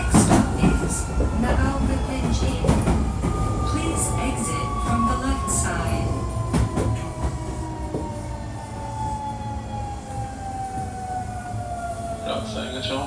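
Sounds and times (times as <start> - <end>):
rail-joint clicks: 0.0 - 4.2
train running gear rumble: 0.0 - 13.0.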